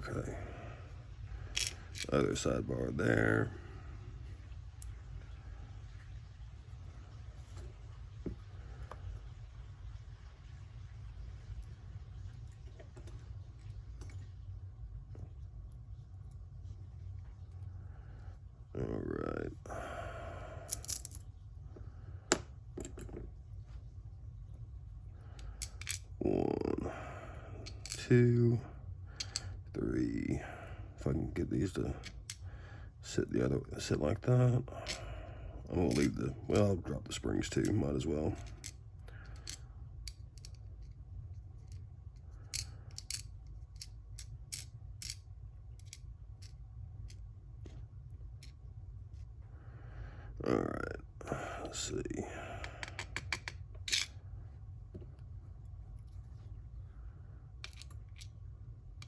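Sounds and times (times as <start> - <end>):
low hum: 0.0 - 59.0
small metal parts clicking: 1.5 - 2.1, 20.7 - 21.2, 25.4 - 26.1, 27.6 - 28.0, 29.2 - 29.5, 35.9 - 36.7, 38.4 - 41.0, 41.6 - 45.2, 45.8 - 47.2, 52.8 - 54.2, 57.6 - 58.4.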